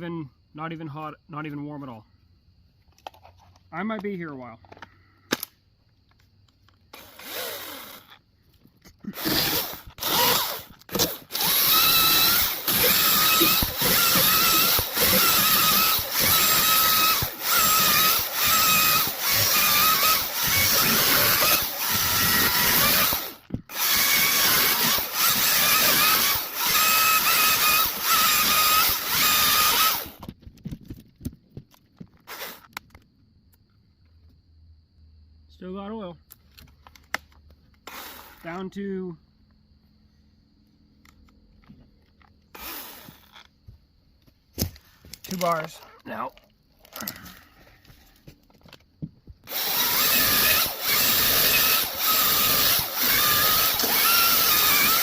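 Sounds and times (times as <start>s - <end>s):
electric chainsaw whining: 6.9s - 8.2s, 9.1s - 30.3s, 37.8s - 38.6s, 42.5s - 43.5s, 49.4s - 55.0s.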